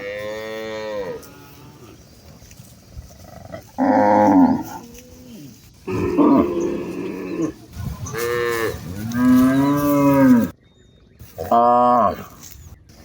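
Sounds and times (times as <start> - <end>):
cattle mooing: 3.5 - 10.5.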